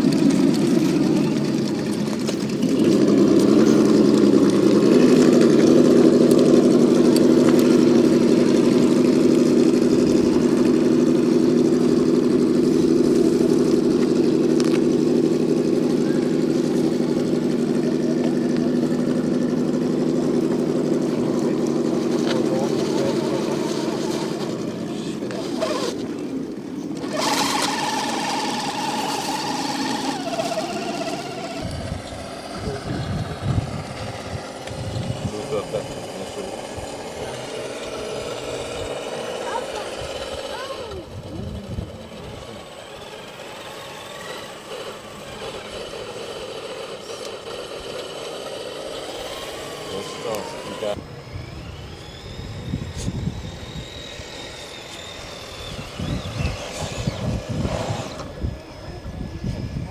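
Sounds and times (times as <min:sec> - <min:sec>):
uneven low rumbling: 0:00.0 - 0:48.2, 0:49.0 - 0:59.9
electric motor whining: 0:00.0 - 0:59.9
low rumbles and thumps: 0:31.6 - 0:39.0, 0:55.0 - 0:59.9.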